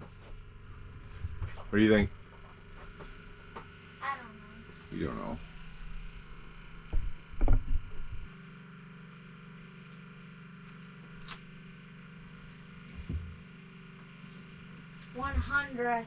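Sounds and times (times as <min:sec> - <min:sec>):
steady low hum: 0:00.0 - 0:16.0
low thumps: 0:06.8 - 0:08.3.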